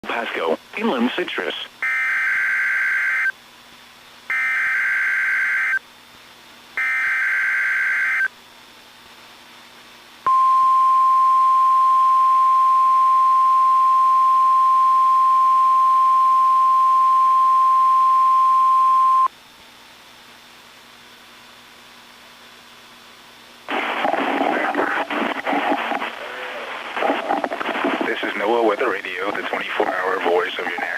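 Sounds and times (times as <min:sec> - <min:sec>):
steady warning alarm tone: 0:01.8 - 0:03.3, 0:04.3 - 0:05.8, 0:06.8 - 0:08.3.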